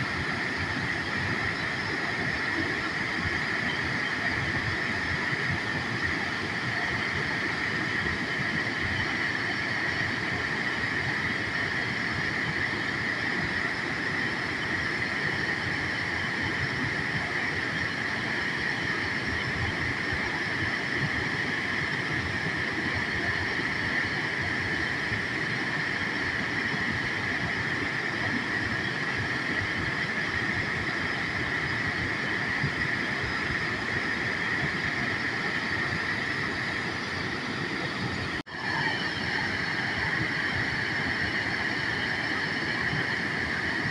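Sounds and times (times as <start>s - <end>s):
waterfall rushing: 37.6s - 43.9s.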